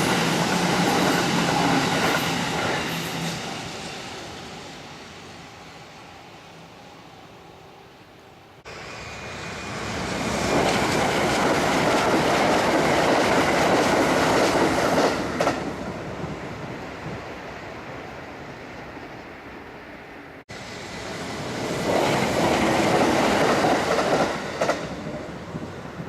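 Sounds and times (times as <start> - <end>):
train wheels clacking over rail joints: 21.8 - 25.0.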